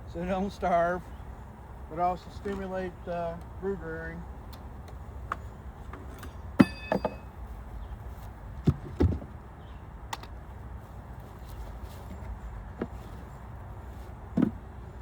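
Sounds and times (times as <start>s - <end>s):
short ringing clink: 6.6s - 7.4s
knocks and clunks of hive parts: 8.6s - 9.4s, 14.3s - 14.7s.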